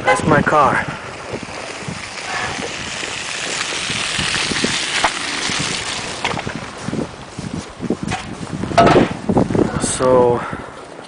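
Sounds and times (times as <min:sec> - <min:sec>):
tyres hissing through slush: 0:00.8 - 0:07.2.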